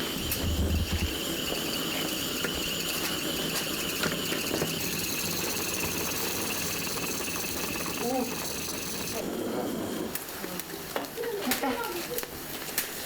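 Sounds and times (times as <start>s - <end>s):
meat sizzling on a grill: 0.0s - 10.0s.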